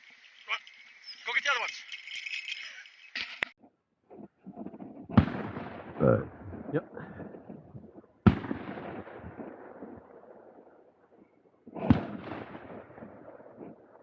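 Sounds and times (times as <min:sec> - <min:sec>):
shotgun shots with echo: 0:05.1 - 0:06.8, 0:08.2 - 0:10.4, 0:11.8 - 0:14.0.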